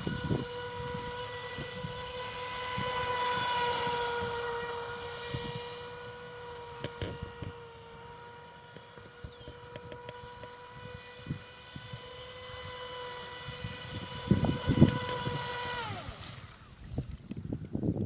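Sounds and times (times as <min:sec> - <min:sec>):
electric motor whine: 0:00.0 - 0:18.0.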